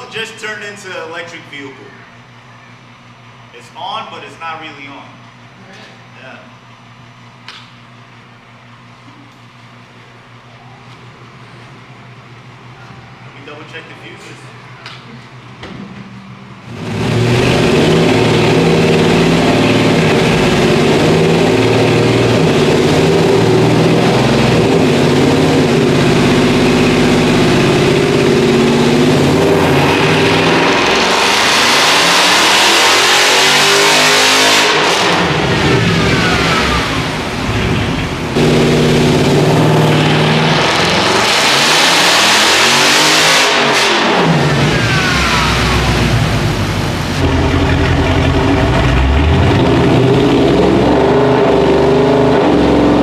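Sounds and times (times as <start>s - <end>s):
car engine revving loudly: 16.7s - 53.0s.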